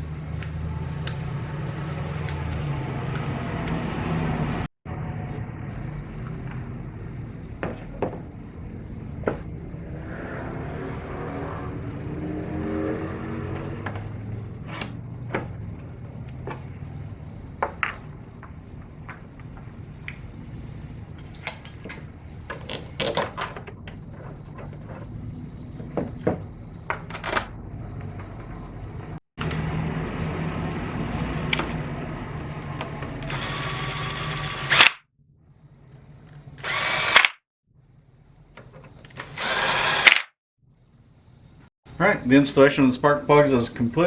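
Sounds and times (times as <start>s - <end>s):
steady low hum: 0.0s - 34.6s, 35.2s - 37.0s
tools and plastic parts clattering: 21.5s - 25.2s.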